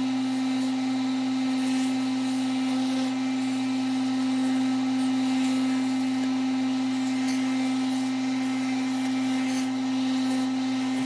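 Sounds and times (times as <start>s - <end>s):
electric sander running: 0.0s - 11.0s.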